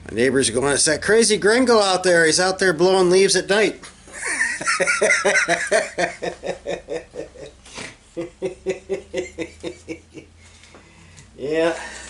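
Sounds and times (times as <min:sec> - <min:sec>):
man chuckling: 0:04.1 - 0:10.4.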